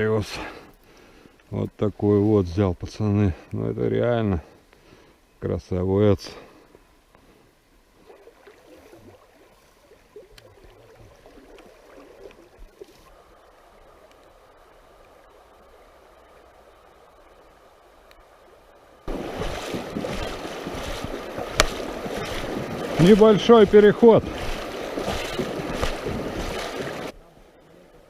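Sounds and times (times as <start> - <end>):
river water rushing: 13.2 - 27.2.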